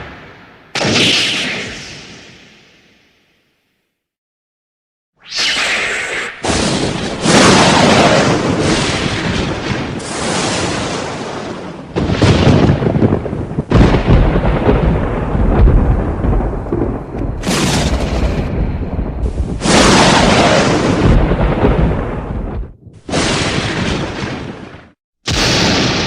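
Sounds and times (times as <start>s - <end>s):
thunder rumbling and cracking: 6.4s - 26.0s.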